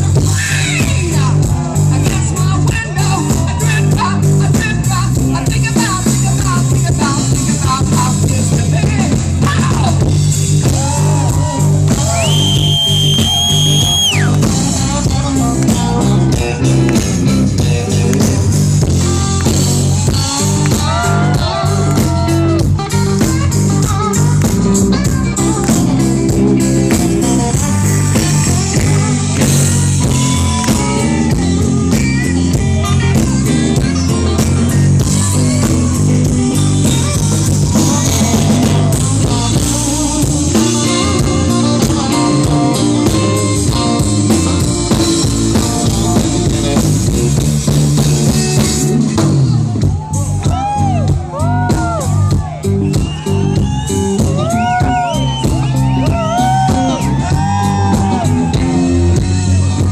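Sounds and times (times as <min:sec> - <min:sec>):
lead guitar bending notes: 0:00.0 - 0:54.9
blues band playing: 0:00.0 - 0:59.9.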